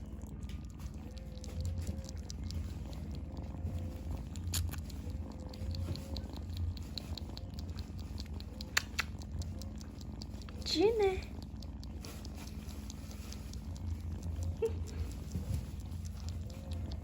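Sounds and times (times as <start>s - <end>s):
cat purring: 0.0s - 17.0s
cat suckling ticks: 0.0s - 17.0s
sharp clicks: 8.4s - 10.6s.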